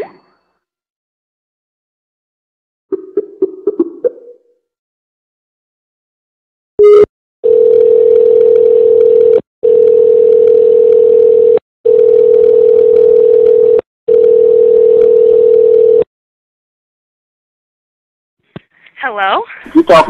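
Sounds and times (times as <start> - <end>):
telephone dial tone: 6.8 - 16.1.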